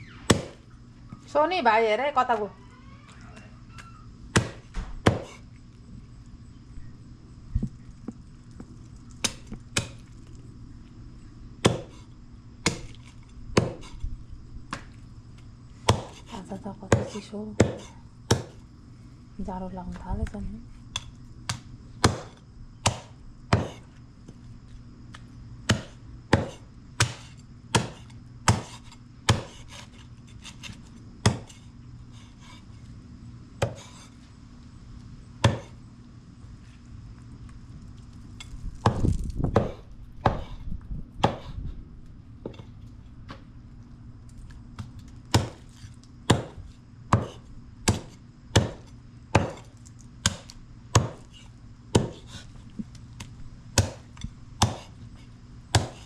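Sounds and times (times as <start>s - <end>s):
knife chopping chicken bone: 25.7s - 31.6s, 45.3s - 51.4s, 53.8s - 54.9s, 55.7s - 56.0s.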